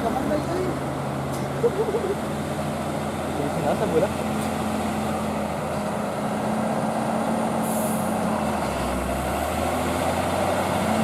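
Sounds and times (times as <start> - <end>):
bus engine running: 0.0 - 11.0.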